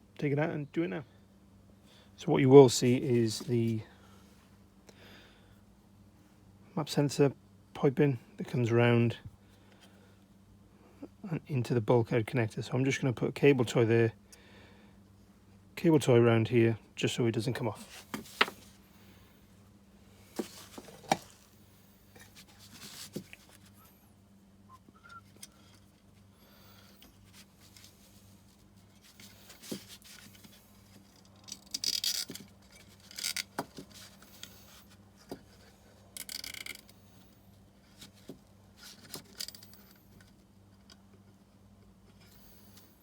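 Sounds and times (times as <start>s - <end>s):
cable tie clicks and scrapes: 27.0s - 37.3s, 37.9s - 41.1s.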